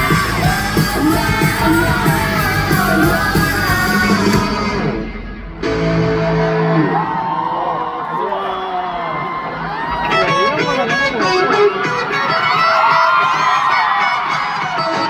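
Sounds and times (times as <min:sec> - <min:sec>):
person singing: 0:00.0 - 0:05.1
amplified live band playing: 0:00.0 - 0:07.3, 0:09.5 - 0:15.0.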